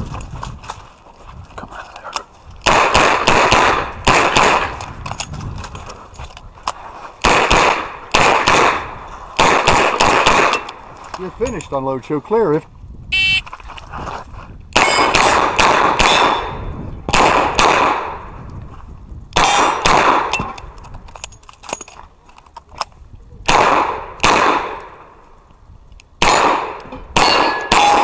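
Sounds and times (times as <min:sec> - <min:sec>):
revolver gunshots with ringing tail: 0:02.7 - 0:04.7, 0:07.2 - 0:10.7, 0:14.8 - 0:18.2, 0:19.4 - 0:20.5, 0:23.5 - 0:24.8, 0:26.2 - 0:28.0.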